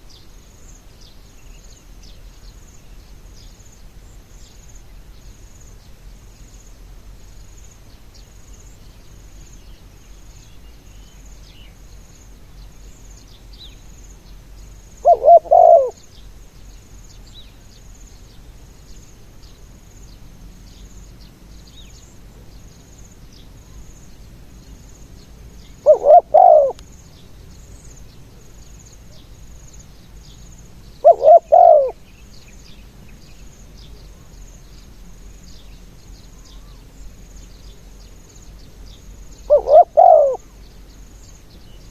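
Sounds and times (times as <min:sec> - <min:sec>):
insects chirping: 0:00.0 - 0:41.9
dove cooing: 0:15.0 - 0:16.0, 0:25.8 - 0:26.8, 0:31.0 - 0:32.0, 0:39.4 - 0:40.5.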